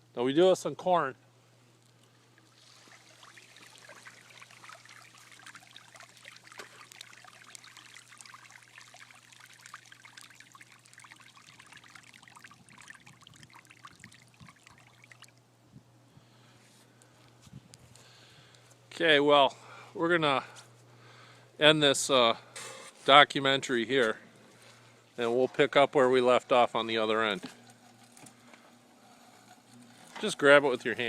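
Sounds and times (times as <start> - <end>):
low steady hum: 0.0 - 31.0
water pouring and splashing: 2.4 - 15.4.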